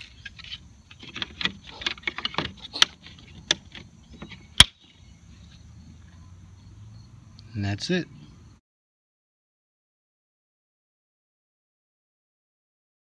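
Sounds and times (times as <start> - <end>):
plastic rattles and clicks: 0.0 - 4.8.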